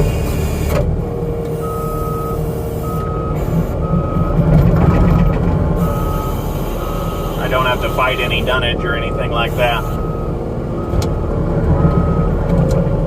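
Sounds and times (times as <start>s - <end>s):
engine running: 0.0s - 13.0s
backup alarm beeping: 1.6s - 12.4s.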